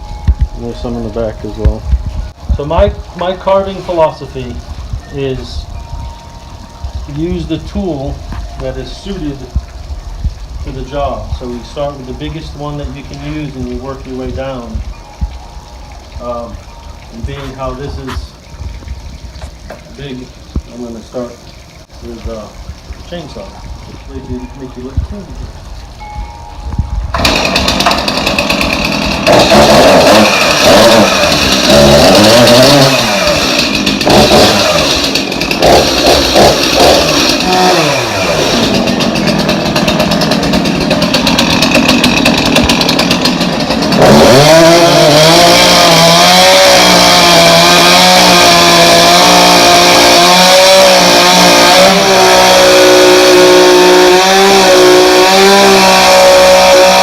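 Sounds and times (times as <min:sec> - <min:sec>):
chainsaw running: 0:27.1 - 0:57.0.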